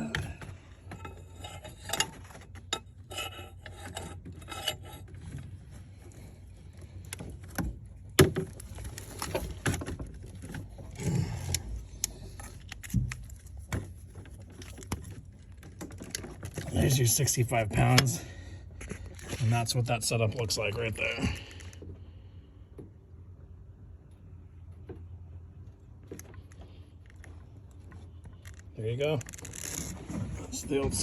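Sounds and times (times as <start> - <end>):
ratchet scraping and clicking on metal: 0.0 - 5.7.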